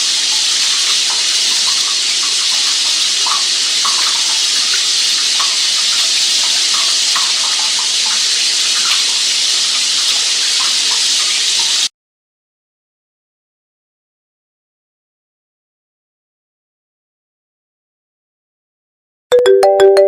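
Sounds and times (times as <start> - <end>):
water gurgling: 0.0 - 11.4
running water rushing: 0.0 - 11.9.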